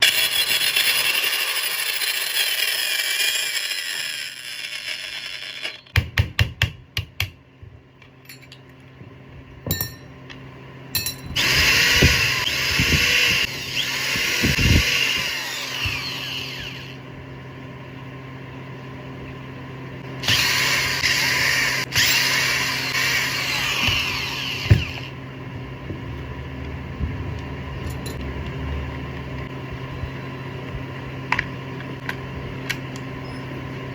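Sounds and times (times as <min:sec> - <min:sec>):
angle grinder whine: 0:00.0 - 0:06.0, 0:11.2 - 0:17.4, 0:20.0 - 0:30.7.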